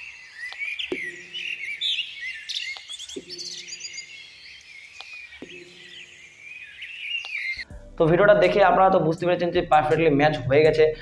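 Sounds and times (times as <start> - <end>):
small birds chirping: 0.0 - 7.8.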